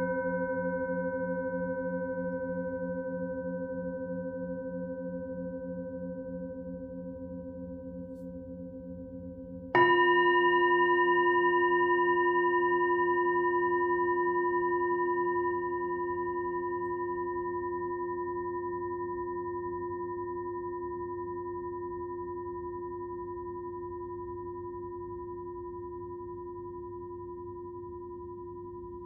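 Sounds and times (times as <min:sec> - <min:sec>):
singing bowls ringing: 0:09.8 - 0:29.0.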